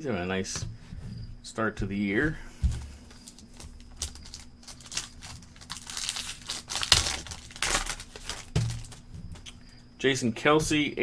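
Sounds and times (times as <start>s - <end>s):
foil wrapper crinkling and tearing: 2.6s - 9.4s.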